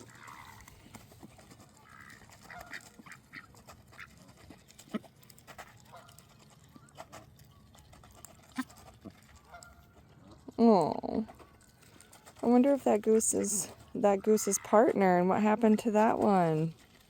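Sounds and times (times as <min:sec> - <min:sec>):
ducks quacking: 0:01.8 - 0:04.2, 0:12.6 - 0:15.3.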